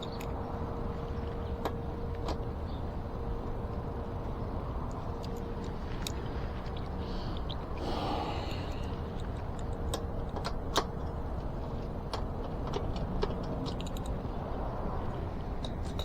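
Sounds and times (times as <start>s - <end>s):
steady low hum: 0.0s - 12.1s.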